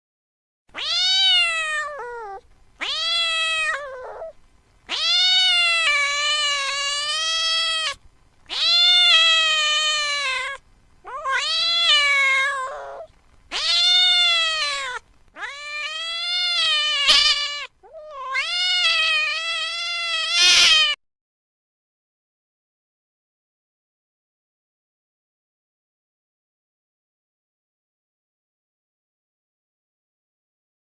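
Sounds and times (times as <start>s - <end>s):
kitten meowing: 0.8s - 21.0s.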